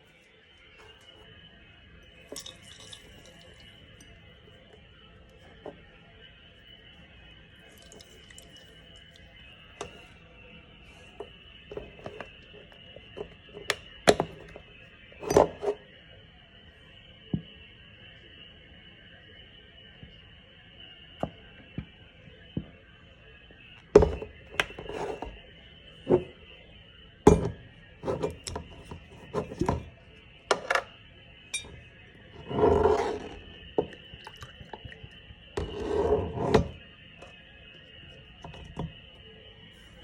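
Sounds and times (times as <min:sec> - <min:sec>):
faint background music: 0:00.0 - 0:40.0
glassware and utensils clinking: 0:02.3 - 0:04.1, 0:31.5 - 0:31.8.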